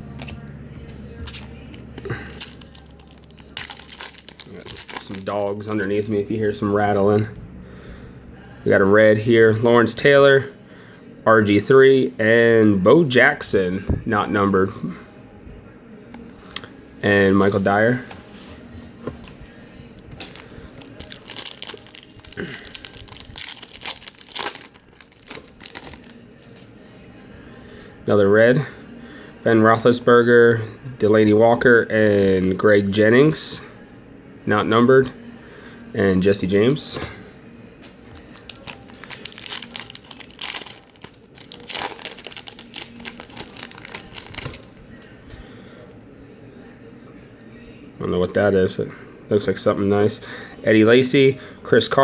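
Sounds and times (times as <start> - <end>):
wrapper crinkling and tearing: 1.3 - 6.2, 20.2 - 26.6, 38.2 - 45.1.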